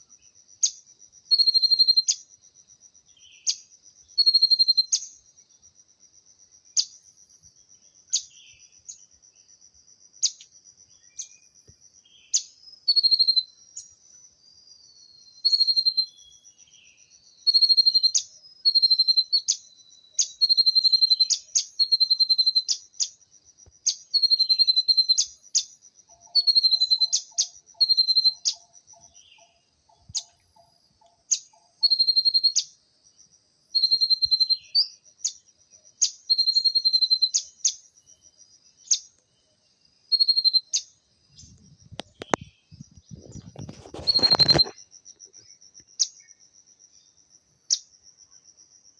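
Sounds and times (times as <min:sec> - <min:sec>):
songbird calling: 0:03.1 - 0:05.2, 0:08.1 - 0:09.1, 0:10.2 - 0:23.2, 0:23.8 - 0:32.8, 0:33.7 - 0:37.9, 0:38.7 - 0:46.4.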